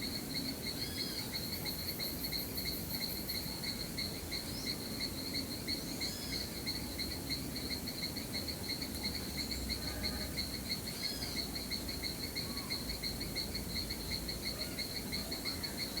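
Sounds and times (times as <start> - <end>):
crickets chirping: 0.0 - 16.0.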